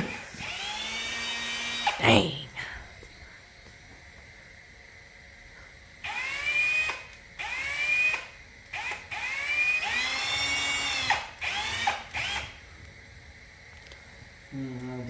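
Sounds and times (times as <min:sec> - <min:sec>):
power drill motor whine: 0:00.0 - 0:02.0, 0:06.0 - 0:12.6.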